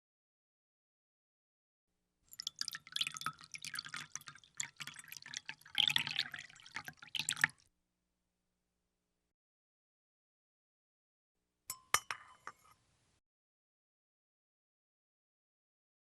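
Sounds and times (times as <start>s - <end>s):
water splashing and dripping: 2.3s - 7.6s.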